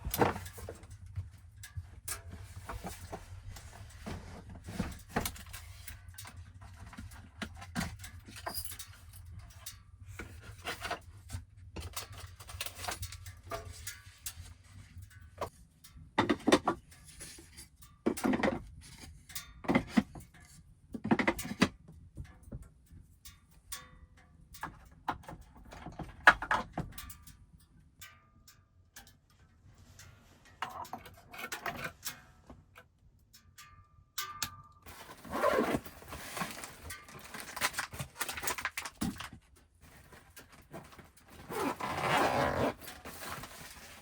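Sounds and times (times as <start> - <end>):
objects knocking and clattering: 0.0 - 9.6, 16.2 - 18.8, 34.3 - 42.0, 42.8 - 44.0.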